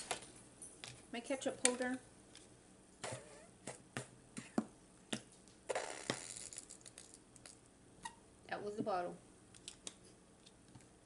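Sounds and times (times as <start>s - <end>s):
ketchup bottle sputtering: 5.7s - 7.6s.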